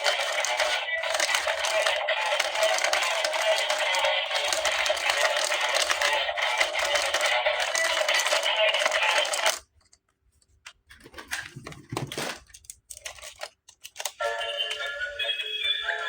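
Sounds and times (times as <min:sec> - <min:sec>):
plastic toy parts clicking: 0:00.0 - 0:14.2
toy electronic tune: 0:14.2 - 0:16.0.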